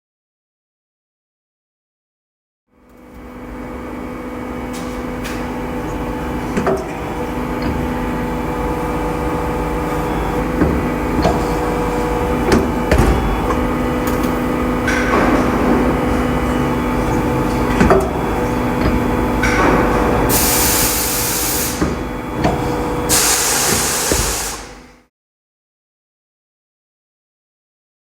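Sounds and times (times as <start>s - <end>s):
machinery humming: 2.8s - 25.1s
sharp knocks and clanks: 12.4s - 20.5s.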